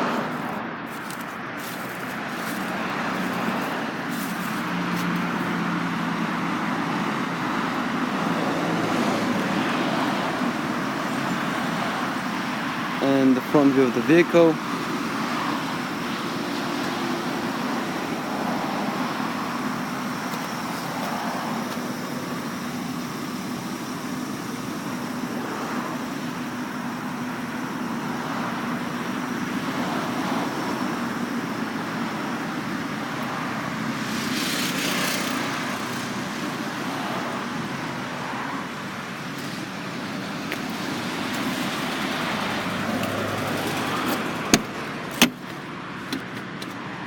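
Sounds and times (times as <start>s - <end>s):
road traffic hum and hiss: 0.0s - 47.0s.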